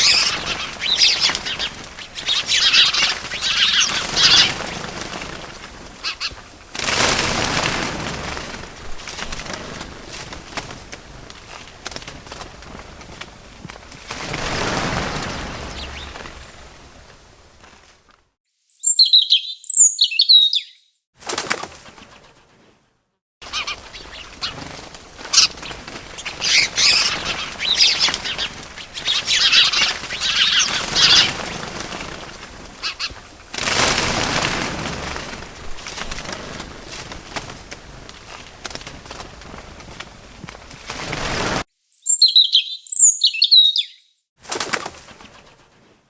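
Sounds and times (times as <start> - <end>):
birds twittering: 0.0 - 6.6, 14.5 - 16.9, 18.6 - 21.0, 23.4 - 33.3, 41.8 - 44.2
wings flapping: 0.0 - 18.2, 21.2 - 41.7, 44.4 - 46.0
high bird chirps: 18.5 - 21.0, 41.8 - 44.2.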